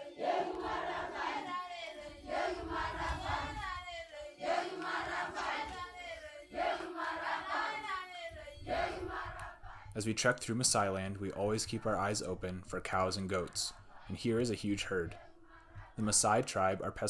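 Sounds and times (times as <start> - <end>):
group of voices chanting: 0.0 - 10.0, 13.4 - 16.2.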